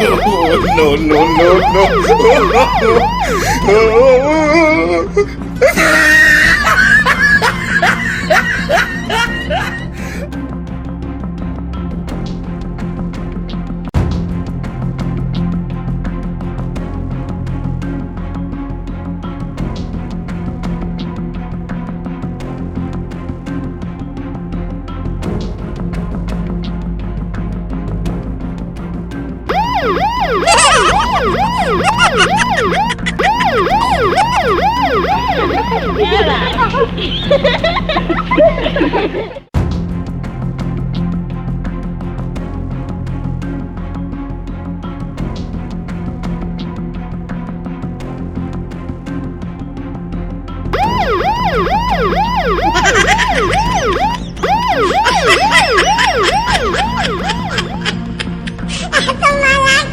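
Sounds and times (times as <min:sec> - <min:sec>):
electronic siren yelping: 0:00.0 - 0:04.2, 0:29.5 - 0:37.5, 0:50.8 - 0:58.5
background music with steady beat: 0:00.0 - 0:59.2.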